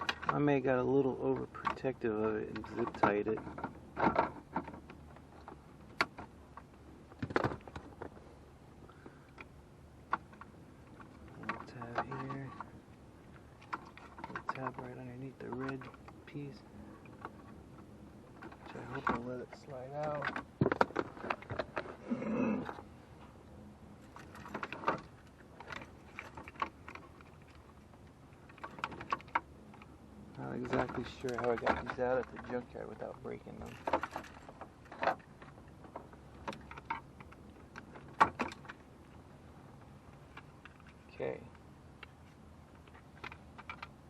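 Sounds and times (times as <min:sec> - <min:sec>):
plastic parts clicking and tapping: 0:28.4 - 0:38.8, 0:42.8 - 0:44.0.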